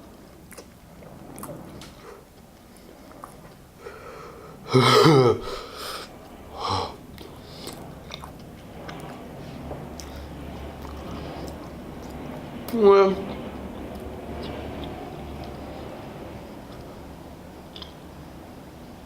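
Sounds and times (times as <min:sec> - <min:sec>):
man chewing with wet mouth sounds: 0:00.0 - 0:03.8, 0:07.1 - 0:12.3, 0:13.4 - 0:15.6, 0:17.6 - 0:18.2.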